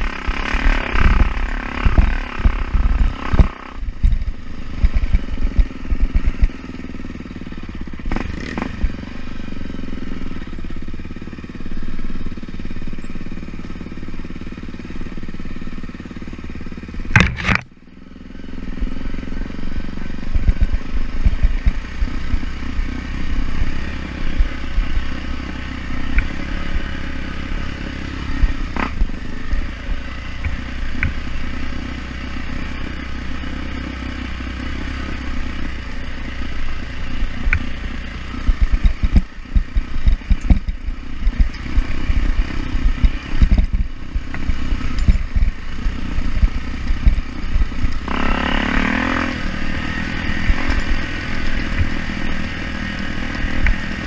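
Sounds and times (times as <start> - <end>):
motorcycle engine running: 0.0 - 54.0
rumbling and clatter over ground: 0.0 - 54.0
scattered clicks: 17.1 - 17.7, 38.5 - 45.6.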